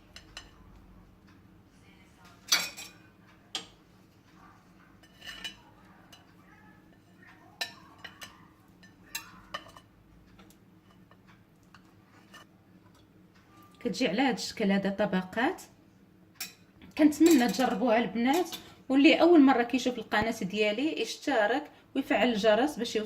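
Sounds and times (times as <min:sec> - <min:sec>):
cutlery clinking and scraping on dish: 0:02.5 - 0:03.0, 0:05.0 - 0:06.3, 0:06.9 - 0:09.9, 0:12.1 - 0:12.5, 0:17.2 - 0:18.7.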